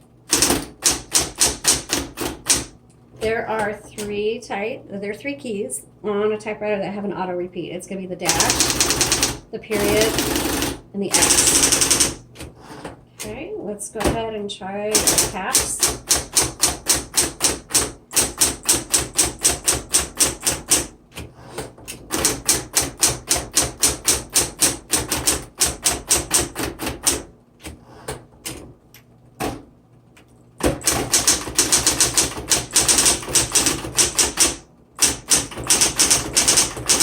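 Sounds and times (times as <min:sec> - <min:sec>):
typewriter motor hum: 0:00.2 - 0:02.8, 0:08.3 - 0:12.9, 0:14.9 - 0:29.5, 0:30.6 - 0:37.0
typewriter key strikes: 0:15.0 - 0:20.9, 0:30.6 - 0:37.0.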